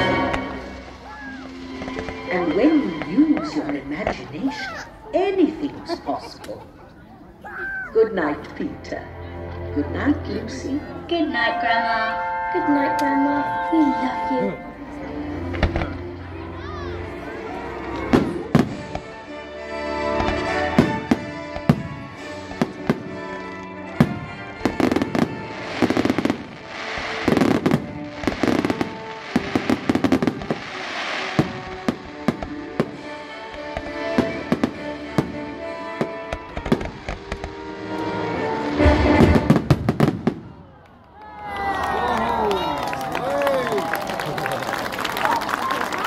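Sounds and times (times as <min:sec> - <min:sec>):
music with long held notes: 0:00.0 - 0:04.4, 0:08.2 - 0:40.4
fireworks crackling: 0:00.0 - 0:06.6, 0:16.9 - 0:46.0
firework bursts and bangs: 0:17.9 - 0:19.1, 0:20.2 - 0:40.8.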